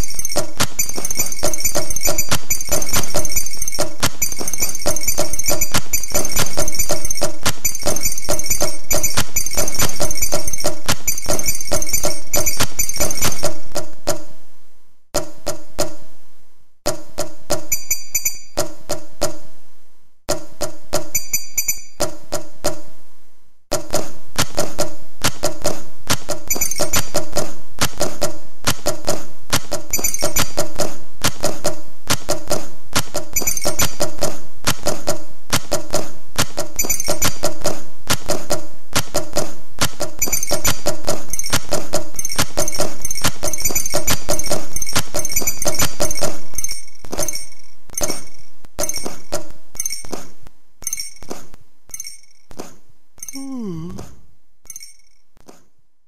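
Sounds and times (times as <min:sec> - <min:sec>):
percussive tableware music: 0:00.0 - 0:13.6.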